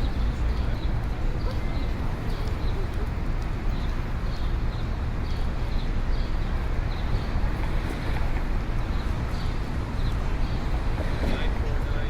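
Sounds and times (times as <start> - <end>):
traffic rumble: 0.0 - 12.0.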